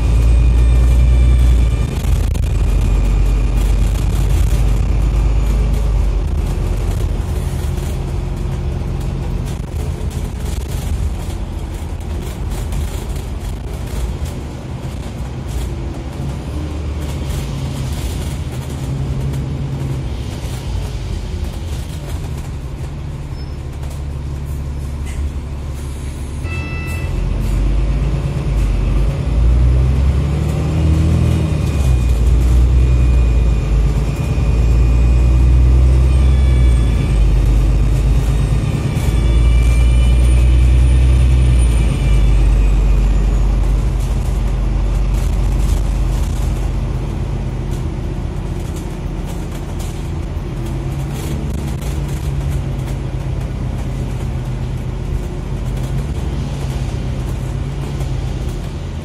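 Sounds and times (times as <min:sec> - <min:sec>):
bus engine whining: 0:00.0 - 0:59.0
short electronic beep: 0:26.4 - 0:27.3.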